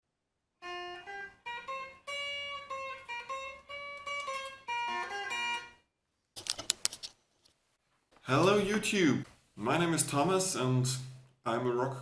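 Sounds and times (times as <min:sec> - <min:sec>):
plucked guitar melody: 0:00.6 - 0:05.8.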